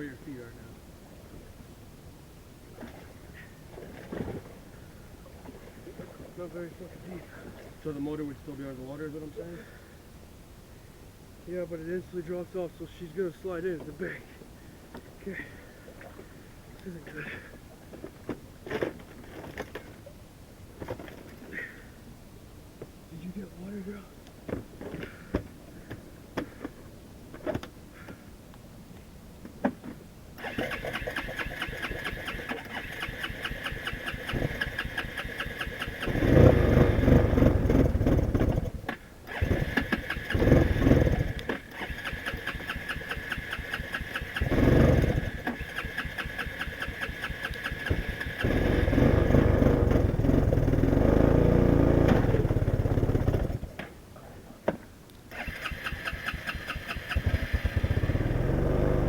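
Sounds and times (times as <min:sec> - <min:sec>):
quad bike engine revving: 0:30.4 - 0:53.7, 0:55.3 - 0:59.0.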